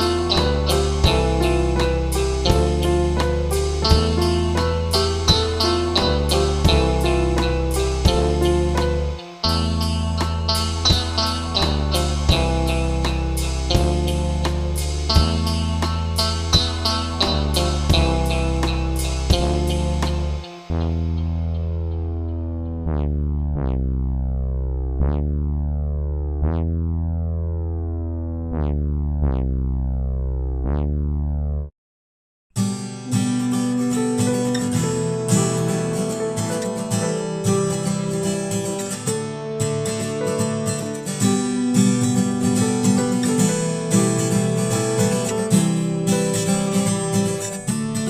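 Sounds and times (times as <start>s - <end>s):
acoustic guitar strumming chords: 0.0s - 22.5s, 32.6s - 48.0s
buzzy synthesizer drone filter sweeps: 0.0s - 31.7s.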